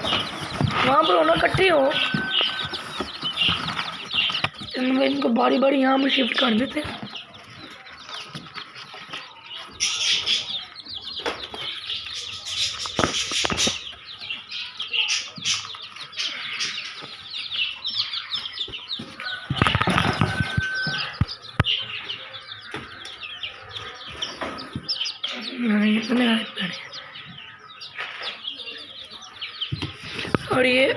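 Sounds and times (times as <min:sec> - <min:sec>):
rustling: 0:00.0 - 0:05.2
chicks peeping: 0:00.0 - 0:30.9
knocks and thumps: 0:19.0 - 0:21.7.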